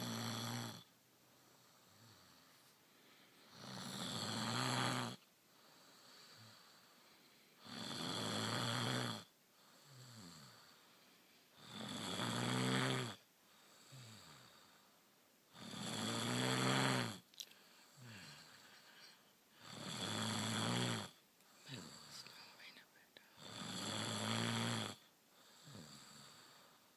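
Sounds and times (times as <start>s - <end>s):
woman snoring: 0.0s - 0.9s, 3.4s - 5.2s, 7.6s - 10.8s, 11.6s - 13.2s, 13.8s - 14.6s, 15.5s - 17.2s, 17.9s - 22.6s, 23.2s - 26.8s
quiet breathing: 0.0s - 16.1s, 17.0s - 24.2s, 24.9s - 26.9s.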